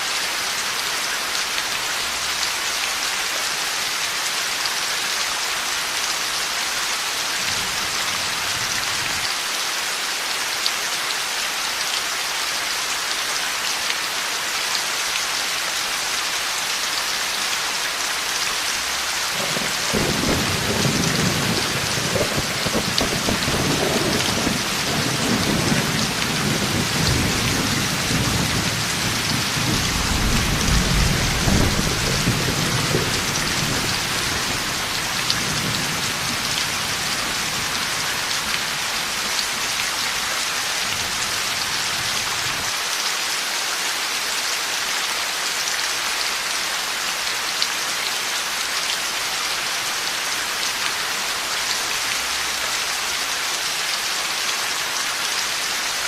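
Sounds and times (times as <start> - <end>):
heavy rain falling: 0.0 - 56.0
thunder rumbling: 19.4 - 34.8.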